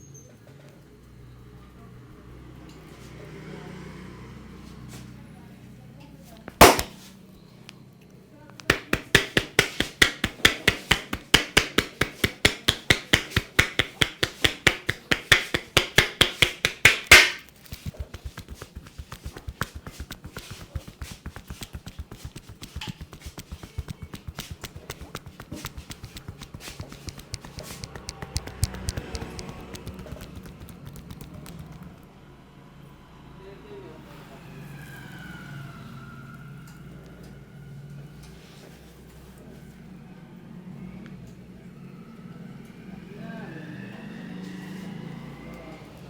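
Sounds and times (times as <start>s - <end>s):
fast quiet tapping: 6.6s - 6.9s, 8.6s - 32.0s
hands striking body in massage: 6.6s - 7.0s, 8.6s - 32.0s.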